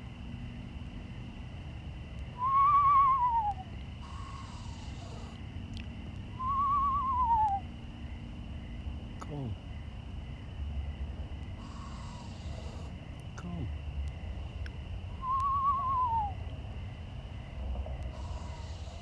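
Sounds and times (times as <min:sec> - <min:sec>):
owl whinnying calls: 0:02.4 - 0:05.4, 0:06.4 - 0:07.7, 0:11.6 - 0:12.9, 0:15.2 - 0:16.4, 0:18.1 - 0:19.0
faint rasping hiss: 0:03.9 - 0:05.7, 0:11.6 - 0:13.6, 0:18.1 - 0:19.0.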